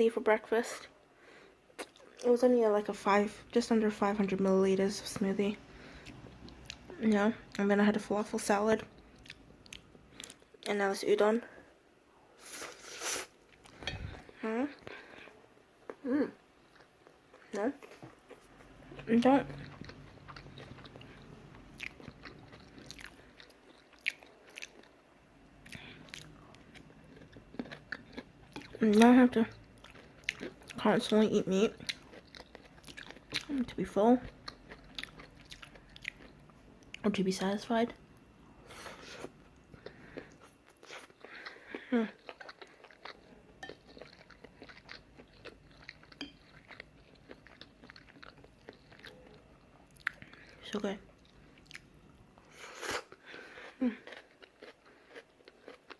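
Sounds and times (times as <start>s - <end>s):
chewing noodles: 16.7s - 24.9s, 25.6s - 37.0s, 38.7s - 55.9s.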